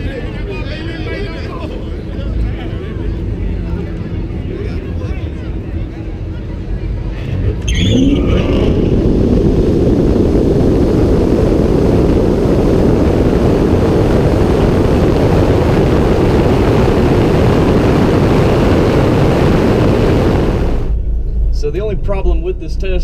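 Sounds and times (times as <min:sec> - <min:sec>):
wind and road noise: 0:00.0 - 0:21.6
rising electric whine: 0:07.5 - 0:23.0.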